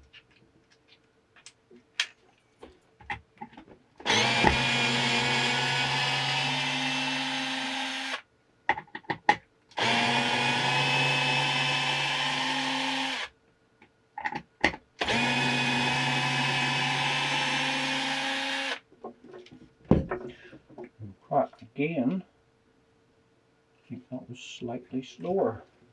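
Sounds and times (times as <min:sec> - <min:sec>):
electric screwdriver motor whine: 0:04.1 - 0:08.2, 0:09.8 - 0:13.3, 0:15.0 - 0:18.8.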